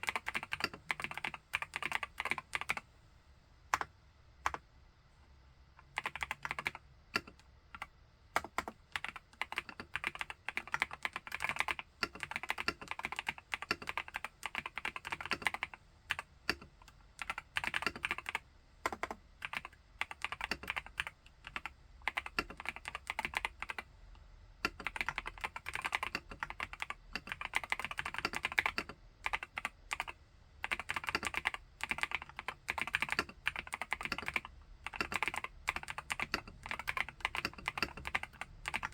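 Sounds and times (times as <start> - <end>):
mechanical keyboard typing: 0.0 - 2.8, 3.7 - 4.6, 5.8 - 23.9, 24.6 - 38.9.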